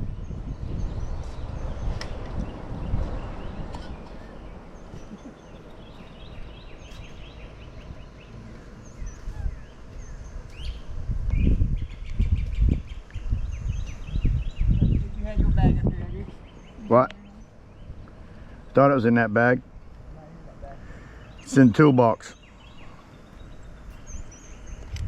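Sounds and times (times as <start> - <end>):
low rumbling noise: 0.0 - 21.4
birds chirping and trilling: 0.0 - 25.0.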